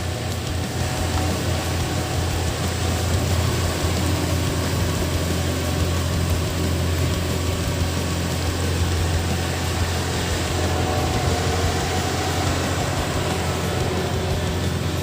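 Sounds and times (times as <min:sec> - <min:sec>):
diesel engine humming: 0:00.0 - 0:15.0.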